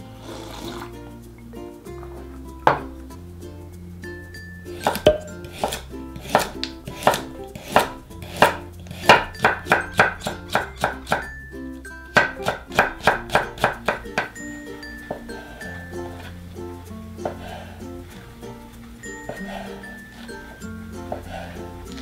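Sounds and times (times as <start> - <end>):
light background music: 0.0 - 22.0
knife chopping on cutting board: 4.9 - 11.3, 12.2 - 14.3.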